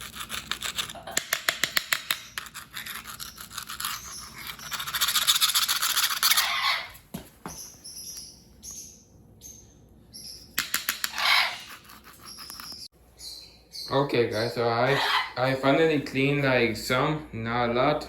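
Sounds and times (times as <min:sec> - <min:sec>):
bird chirps: 0:07.5 - 0:15.4.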